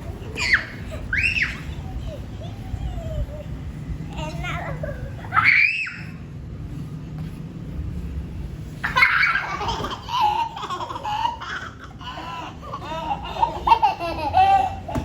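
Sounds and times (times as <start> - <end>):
children laughing: 0.0 - 3.7, 8.8 - 15.0.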